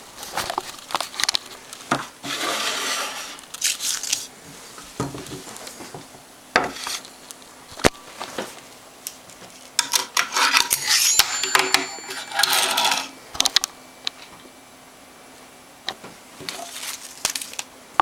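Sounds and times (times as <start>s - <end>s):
rustling and scraping: 0.2s - 7.2s, 16.4s - 17.6s.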